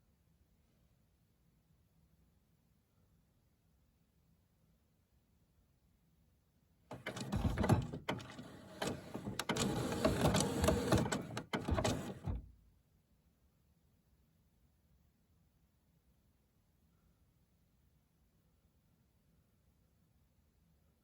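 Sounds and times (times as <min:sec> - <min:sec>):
printer mechanism clicking: 0:06.9 - 0:12.5.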